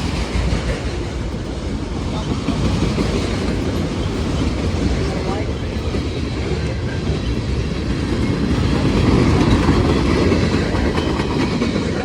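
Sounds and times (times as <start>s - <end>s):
freight train wheels rumbling: 0.0s - 12.0s.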